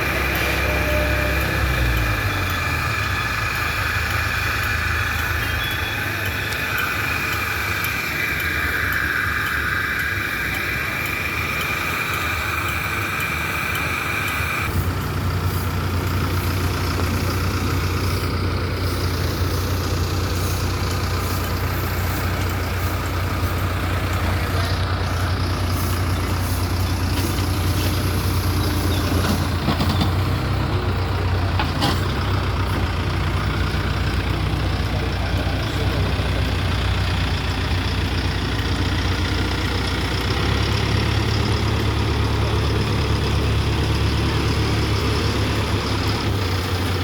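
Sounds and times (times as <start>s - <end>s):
high steady whine: 0.0s - 29.1s
heavy diesel engine running: 0.0s - 47.0s.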